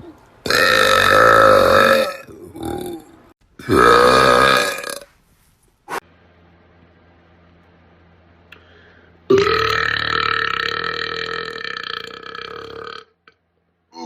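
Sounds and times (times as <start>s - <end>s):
man burping: 0.4s - 5.0s, 9.3s - 13.4s.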